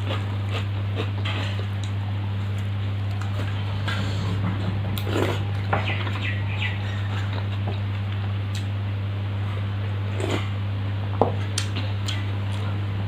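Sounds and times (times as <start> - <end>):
person chewing food: 0.0 - 4.3, 4.9 - 8.8
electric fan hum: 0.0 - 13.0.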